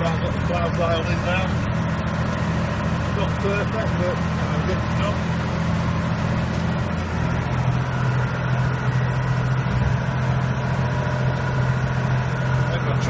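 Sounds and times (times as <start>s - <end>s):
tractor diesel engine under load: 0.0s - 13.0s.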